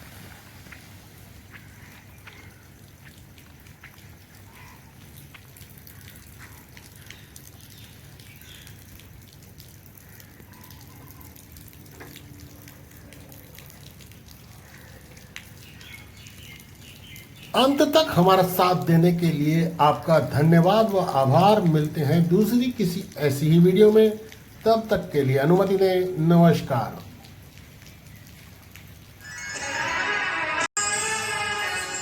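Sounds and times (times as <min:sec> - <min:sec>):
water dripping: 0:00.0 - 0:29.5.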